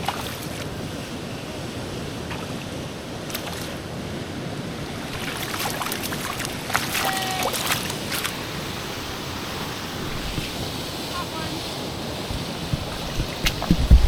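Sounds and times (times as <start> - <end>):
sharp splashes and clicks: 0.0 - 0.7, 2.3 - 3.8, 5.1 - 8.4, 12.3 - 14.0
river water rushing: 0.0 - 14.0
wind on microphone: 7.3 - 14.0.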